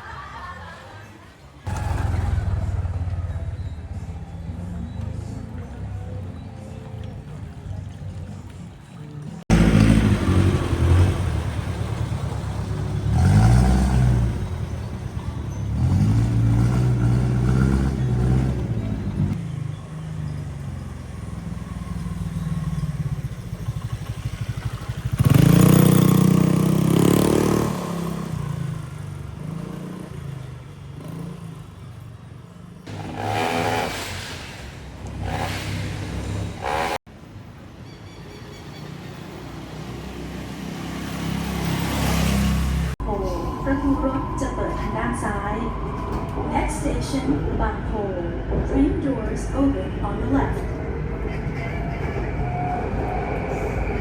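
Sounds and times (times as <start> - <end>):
steady traffic rumble: 0.0 - 54.0
vehicles passing and revving: 0.0 - 54.0.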